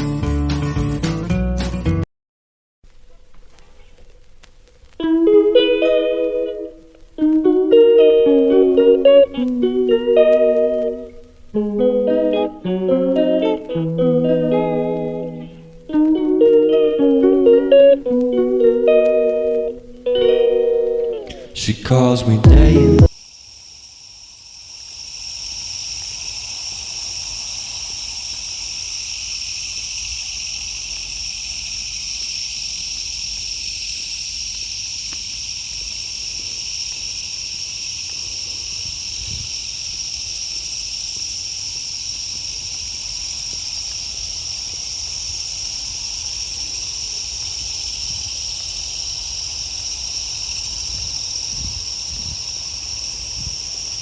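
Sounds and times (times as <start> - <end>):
night insects trilling: 3.4 - 21.5, 23.1 - 54.0.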